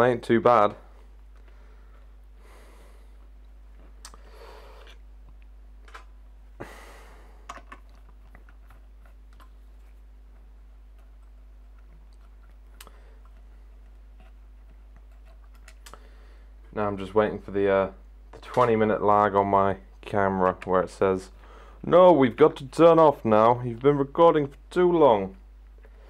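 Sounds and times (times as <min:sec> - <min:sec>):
steady low hum: 0:00.0 - 0:26.0
hands handling computer parts: 0:18.3 - 0:19.0.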